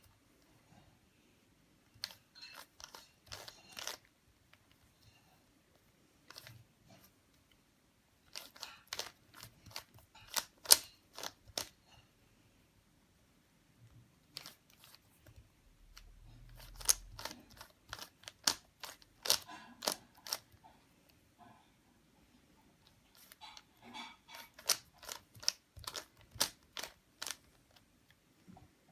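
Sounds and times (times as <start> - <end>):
puzzle cube plastic clicks: 2.0 - 4.8, 6.3 - 6.6, 8.3 - 11.8, 14.3 - 20.6, 24.3 - 27.9.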